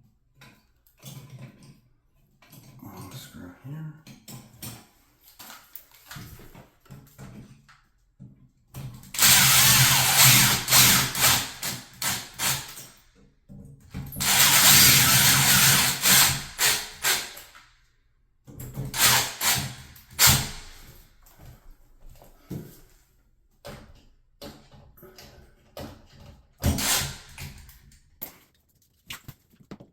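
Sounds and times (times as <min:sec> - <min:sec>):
power drill driving screws: 0:09.2 - 0:12.9, 0:14.2 - 0:17.6, 0:18.9 - 0:20.8, 0:26.6 - 0:27.5.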